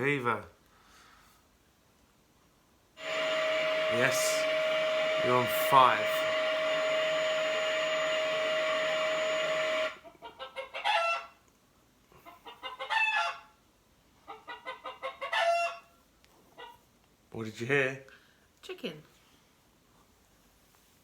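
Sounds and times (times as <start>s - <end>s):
vacuum cleaner humming: 3.0s - 10.0s.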